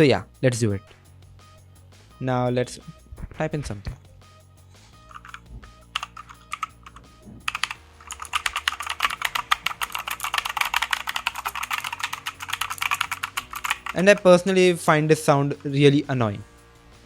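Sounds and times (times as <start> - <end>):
mechanical keyboard typing: 5.1 - 5.4, 6.0 - 14.4.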